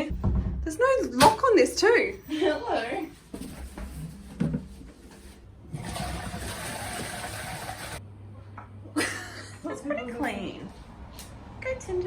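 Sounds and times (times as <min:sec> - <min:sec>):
toilet flushing: 0:05.7 - 0:08.0.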